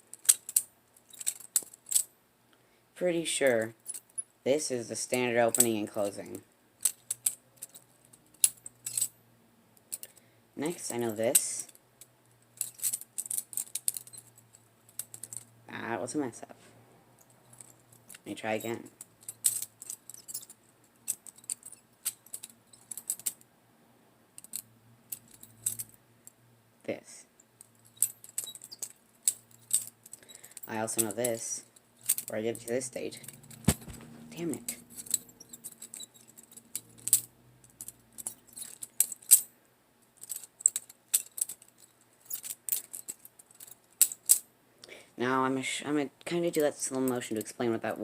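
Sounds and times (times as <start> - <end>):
butterfly comb clacking and rattling: 0.0 - 2.1, 6.8 - 9.2, 10.9 - 15.5, 17.2 - 23.4, 24.4 - 26.0, 27.6 - 39.5, 40.2 - 44.5.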